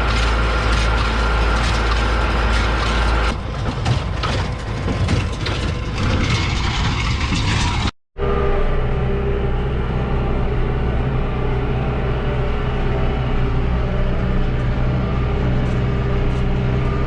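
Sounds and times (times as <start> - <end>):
baler mechanical clatter: 0.0 - 7.9
tractor engine hum: 0.0 - 17.0.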